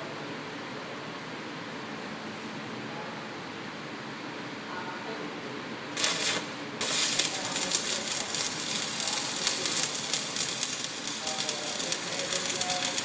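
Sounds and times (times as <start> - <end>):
welding arc crackling: 6.0 - 13.0.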